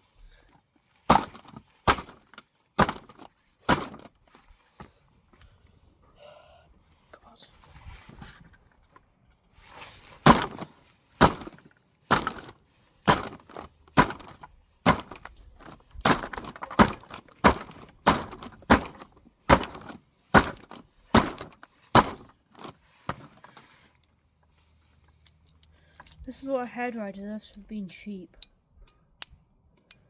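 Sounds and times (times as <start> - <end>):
plastic casing cracking: 1.1 - 4.1, 10.3 - 23.6
heavy blows smashing plastic: 1.1 - 4.2, 10.2 - 23.6.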